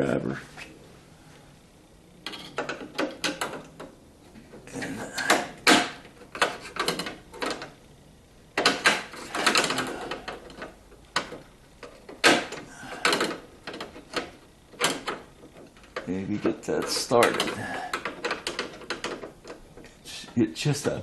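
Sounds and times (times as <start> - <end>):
hand tools and metal parts rattling: 2.2 - 7.8, 8.6 - 19.9.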